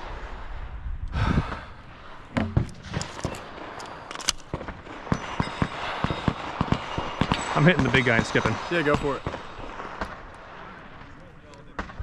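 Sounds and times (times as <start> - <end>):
person breathing hard: 1.1 - 2.2
footsteps: 2.3 - 12.0
gear clattering and clicking: 2.6 - 4.6.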